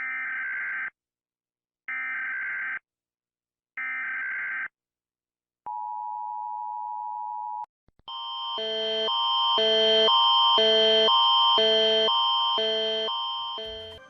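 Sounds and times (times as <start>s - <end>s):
two-tone attention signal: 8.6s - 14.0s.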